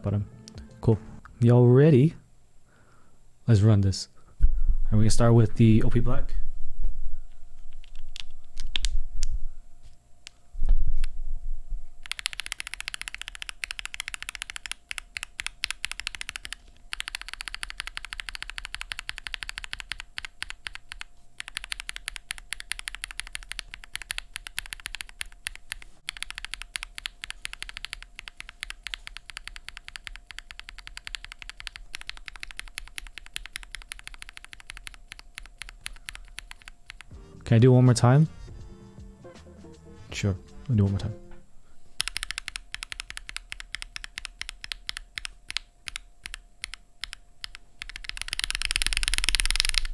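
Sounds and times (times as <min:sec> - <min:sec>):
mechanical keyboard typing: 0:12.0 - 0:37.2, 0:42.0 - 0:49.9.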